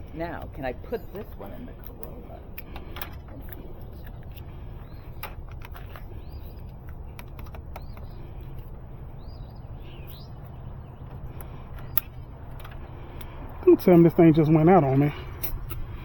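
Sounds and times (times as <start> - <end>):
low background rumble: 0.0 - 16.0
bird chirps: 3.8 - 13.3.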